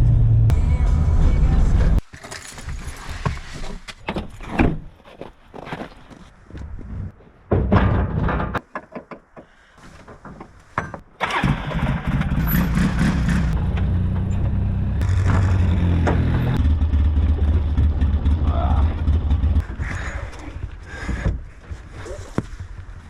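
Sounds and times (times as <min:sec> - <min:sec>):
vehicle engine running: 0:00.0 - 0:02.0, 0:11.4 - 0:19.7
knocks and clatter: 0:05.6 - 0:18.4.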